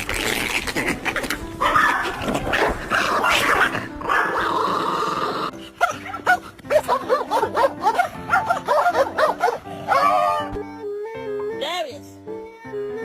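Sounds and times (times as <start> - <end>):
background music: 0.0 - 13.0
dog yipping and barking: 1.6 - 4.4, 5.8 - 10.6.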